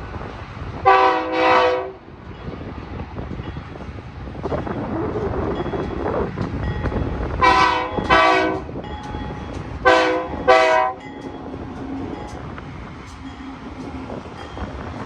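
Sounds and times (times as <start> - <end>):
passing train rumble: 0.0 - 15.0
wind: 0.0 - 15.0
locomotive air horn blasts: 0.8 - 2.0, 7.4 - 8.7, 9.8 - 11.0.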